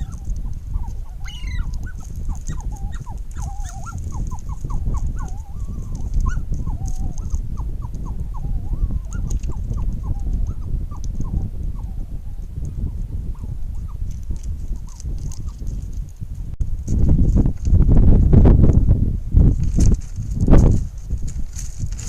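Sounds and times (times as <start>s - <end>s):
wild birds calling: 0.0s - 14.0s
low wind rumble: 0.0s - 22.0s.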